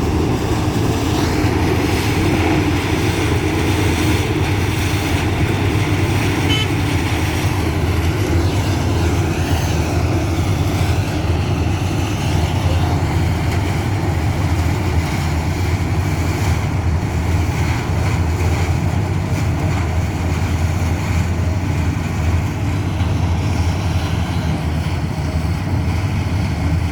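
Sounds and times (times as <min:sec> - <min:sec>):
combine harvester droning: 0:00.0 - 0:26.9.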